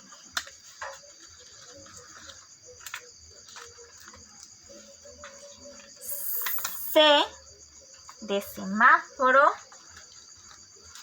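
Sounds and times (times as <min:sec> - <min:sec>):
faint high hiss: 0:06.0 - 0:07.2.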